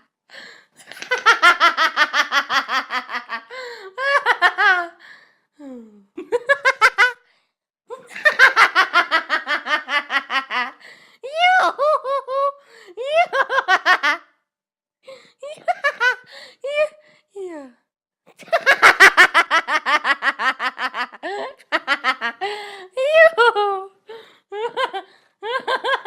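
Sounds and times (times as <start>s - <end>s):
girl laughing mockingly: 7.9s - 14.2s, 15.4s - 16.9s.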